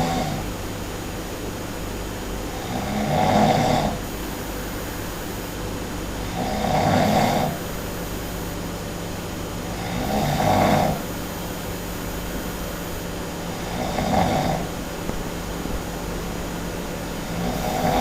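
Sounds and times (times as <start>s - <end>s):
person snoring loudly: 0.0s - 0.4s, 2.5s - 4.0s, 6.2s - 7.6s, 9.7s - 11.1s, 13.5s - 14.8s, 17.2s - 18.0s
steady low hum: 0.0s - 18.0s.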